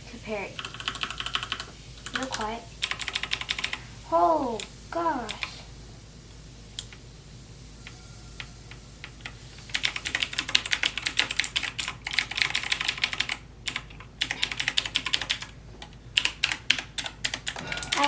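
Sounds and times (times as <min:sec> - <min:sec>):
typing on keyboard: 0:00.6 - 0:03.8, 0:09.0 - 0:18.0.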